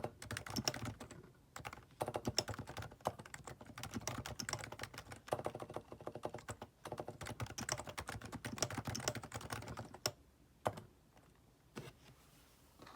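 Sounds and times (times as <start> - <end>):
keyboard typing: 0.0 - 10.9.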